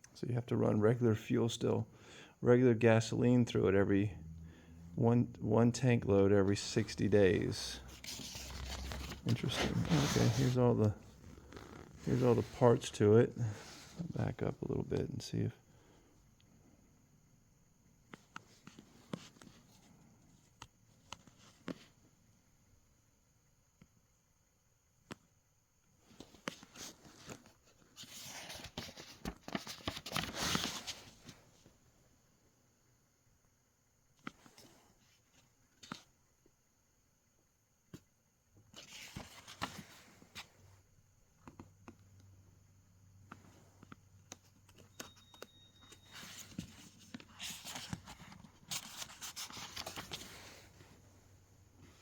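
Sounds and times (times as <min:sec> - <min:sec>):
rustling and clicking handling noise: 0:07.5 - 0:12.6, 0:26.1 - 0:31.8, 0:34.2 - 0:36.6, 0:37.9 - 0:40.6, 0:43.2 - 0:52.0
packaging rustling: 0:44.7 - 0:50.8.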